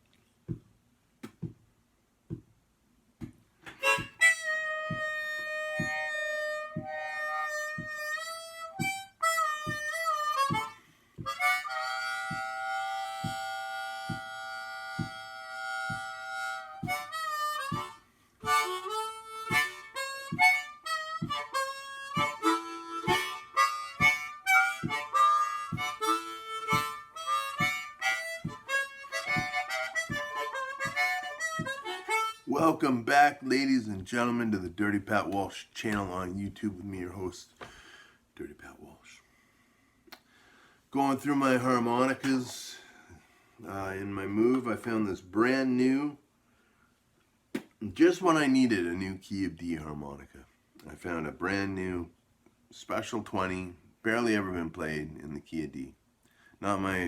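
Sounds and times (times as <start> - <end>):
low beat: 3.2 - 33.5
harmonica playing: 3.7 - 33.6.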